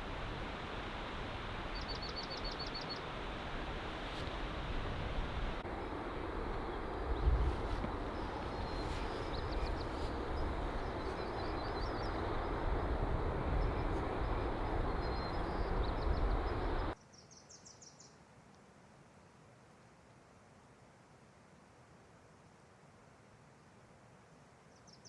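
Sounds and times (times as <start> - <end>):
small birds chirping: 1.7 - 3.1, 6.6 - 12.9, 13.5 - 18.2
loud steady rushing noise: 2.8 - 17.0.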